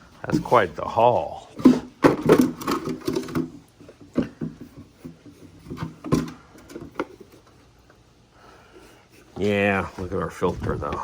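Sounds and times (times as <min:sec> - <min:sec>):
vacuum canister knocks and rustles: 0:01.6 - 0:07.3.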